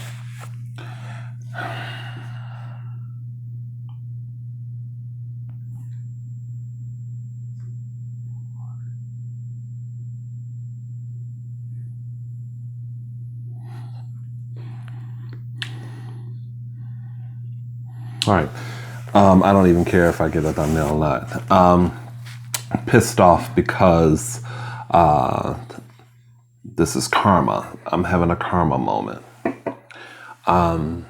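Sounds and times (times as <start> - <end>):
steady low hum: 0.0 - 31.0
faint clicks and rustles: 13.9 - 26.7
person speaking: 18.2 - 26.0, 26.7 - 31.0.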